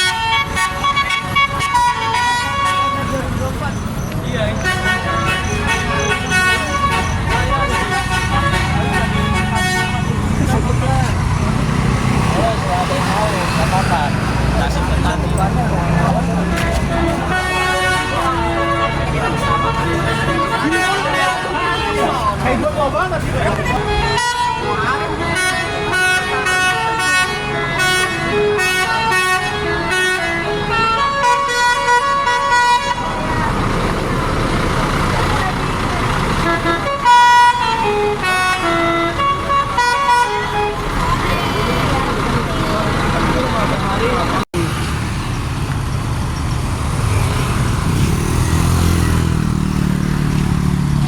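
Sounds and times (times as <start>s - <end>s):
musical bus air horn melody: 0.0s - 3.2s, 4.5s - 10.4s, 16.2s - 22.4s, 23.5s - 33.3s, 36.4s - 41.9s
vehicle engine droning: 0.0s - 51.0s.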